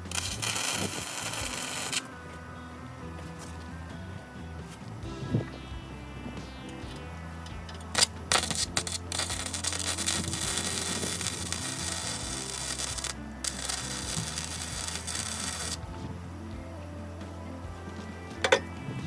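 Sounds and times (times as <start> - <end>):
loud harsh hissing: 0.0 - 2.2, 5.0 - 16.0
background music: 0.0 - 19.0.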